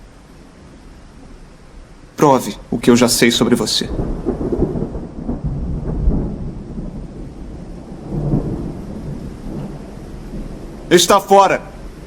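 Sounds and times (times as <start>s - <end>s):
steady rain: 0.0s - 12.0s
low rumbling thunder: 2.6s - 12.0s.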